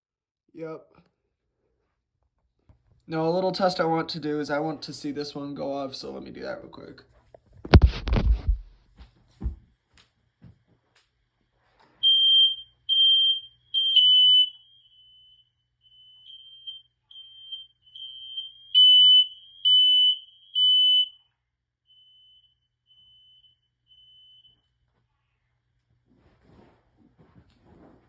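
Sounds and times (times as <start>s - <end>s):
loud smoke alarm beeping: 12.0s - 24.7s
faint smoke alarm beeping: 12.0s - 24.9s.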